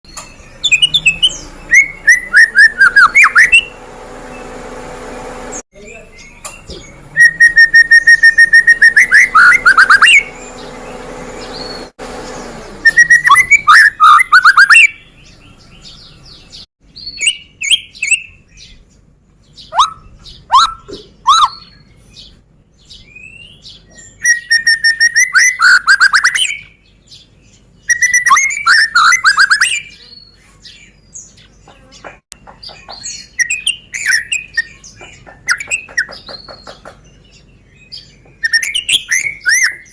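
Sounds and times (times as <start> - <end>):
songbird singing whistled phrases: 0.1 - 3.8, 5.8 - 10.6, 12.8 - 18.8, 19.6 - 22.0, 22.9 - 26.8, 27.8 - 30.4, 32.9 - 36.2, 37.9 - 39.9
bird call notes: 19.6 - 21.8.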